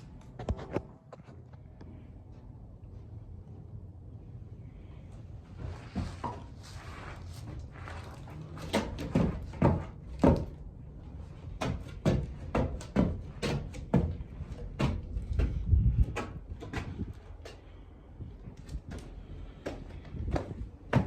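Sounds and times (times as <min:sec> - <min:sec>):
footsteps on wooden boards: 0:05.6 - 0:21.0.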